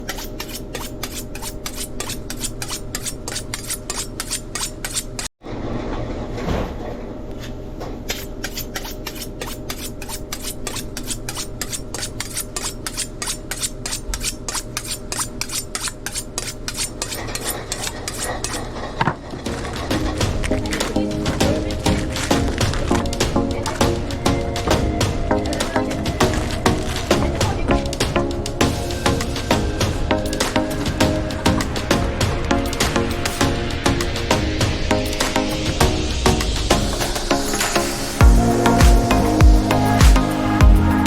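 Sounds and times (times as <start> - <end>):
steady hum: 9.9 - 41.0.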